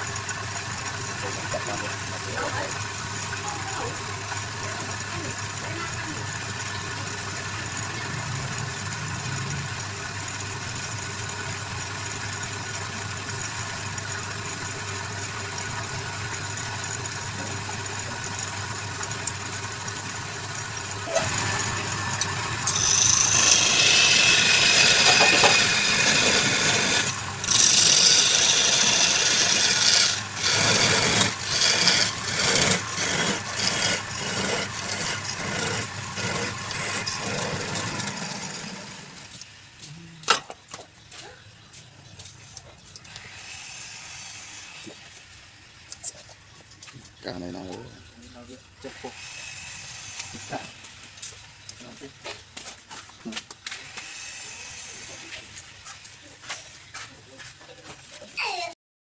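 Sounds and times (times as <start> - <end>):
wood lathe motor humming: 0.0 - 39.4, 43.1 - 45.2, 48.8 - 51.3, 53.8 - 55.6
tool scraping spinning wood: 0.0 - 58.8.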